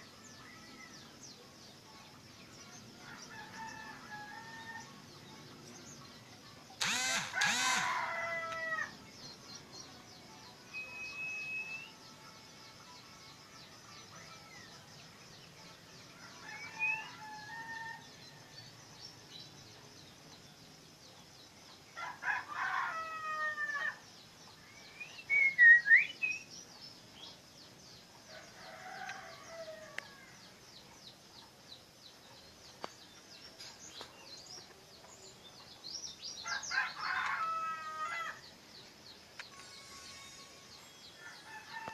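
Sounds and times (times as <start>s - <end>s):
faint high hiss: 4.4s - 21.9s
long bird calls: 6.6s - 9.4s.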